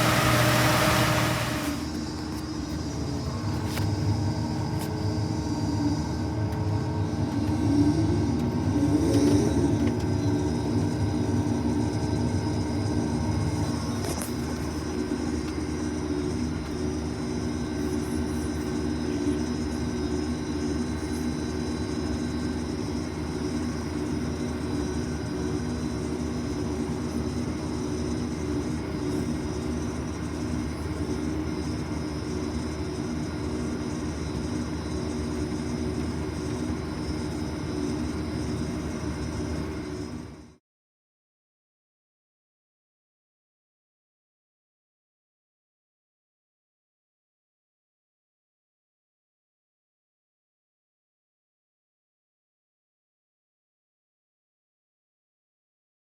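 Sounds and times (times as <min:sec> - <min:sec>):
combine harvester machine drone: 0:00.0 - 0:40.6.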